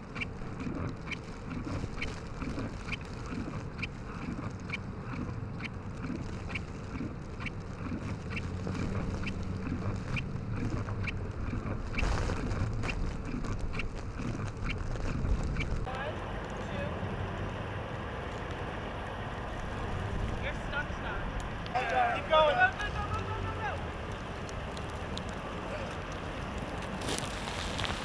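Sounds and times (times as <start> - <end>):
strong wind: 0.0 - 28.0
vehicle engine running: 0.0 - 28.0
faint regular tick: 23.8 - 26.9.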